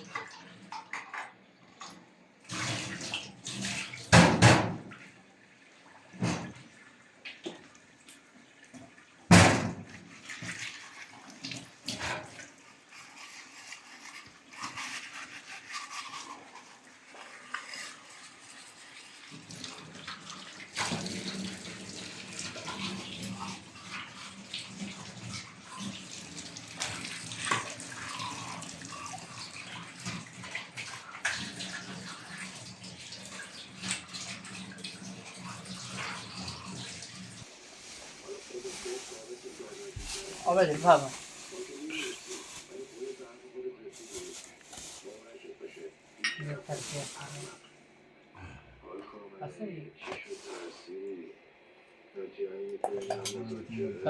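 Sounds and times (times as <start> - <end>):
water splashing and running: 5.8 - 42.8.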